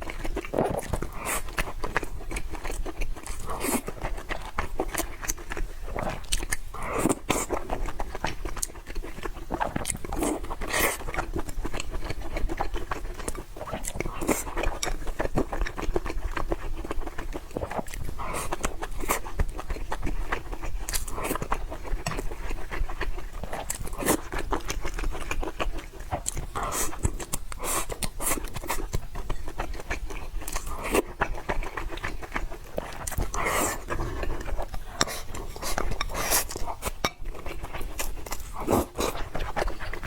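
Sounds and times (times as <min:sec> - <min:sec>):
wet chewing: 0:00.0 - 0:40.0
slurping noodles: 0:32.7 - 0:37.0, 0:37.6 - 0:40.0.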